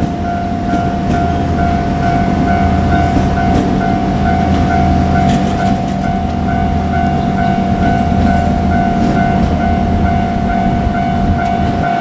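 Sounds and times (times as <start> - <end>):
electric train rumble: 0.0 - 12.0
level crossing warning bell: 0.0 - 12.0.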